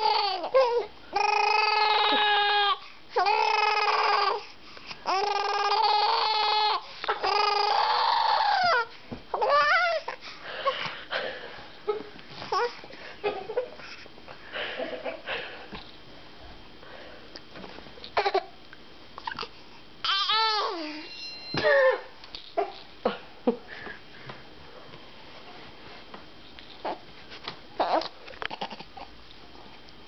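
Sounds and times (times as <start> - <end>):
baby wailing: 0.0 - 4.4, 5.1 - 10.1, 20.0 - 21.0
baby squealing and babbling: 5.1 - 10.1, 19.3 - 21.0, 27.8 - 28.8.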